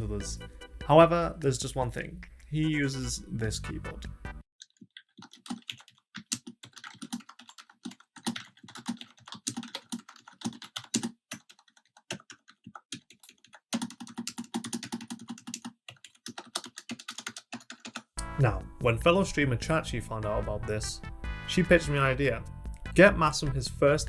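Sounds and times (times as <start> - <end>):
fast typing on keyboard: 4.6 - 18.2.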